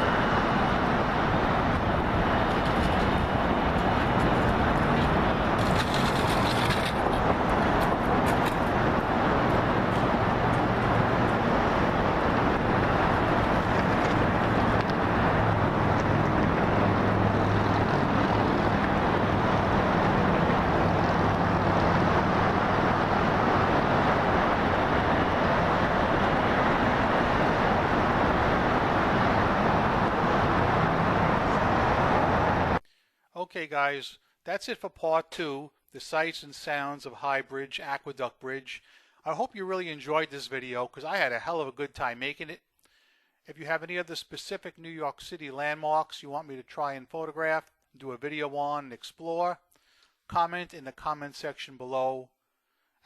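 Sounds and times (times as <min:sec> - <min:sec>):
highway traffic noise: 0:00.0 - 0:32.9.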